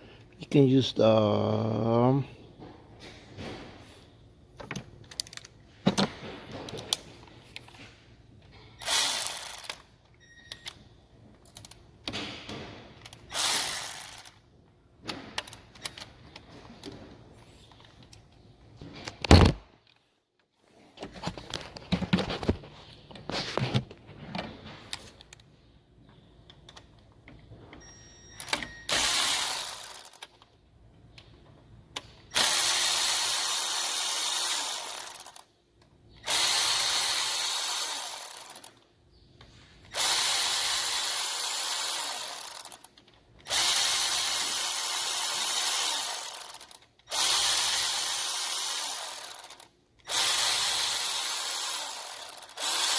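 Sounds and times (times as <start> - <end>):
parts clicking and clattering: 2.4 - 32.5, 42.1 - 44.6
handheld power tool running: 8.8 - 9.8, 13.3 - 14.3, 28.9 - 30.2, 32.3 - 35.4, 36.2 - 38.8, 39.9 - 52.9.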